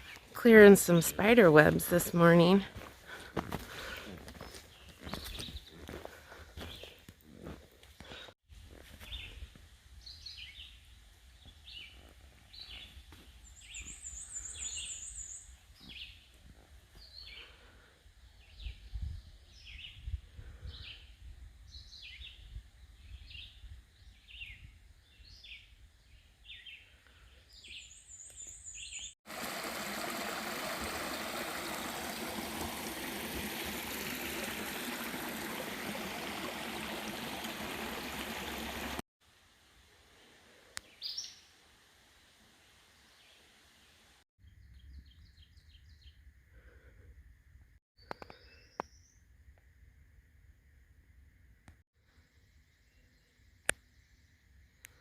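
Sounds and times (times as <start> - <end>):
birds chirping: 3.2 - 5.9.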